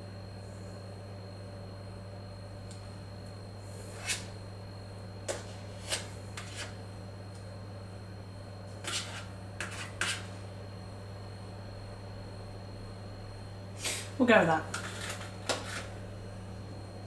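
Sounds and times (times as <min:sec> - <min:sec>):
steady low hum: 0:00.0 - 0:17.0
spoon scraping cream cheese tub: 0:05.3 - 0:06.8, 0:08.8 - 0:10.3, 0:14.7 - 0:16.0.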